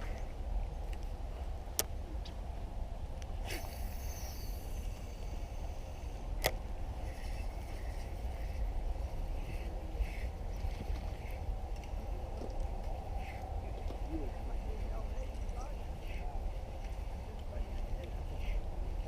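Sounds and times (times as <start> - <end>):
wind rumble on microphone: 0.0 - 19.0
fishing rod whooshing: 3.4 - 5.2.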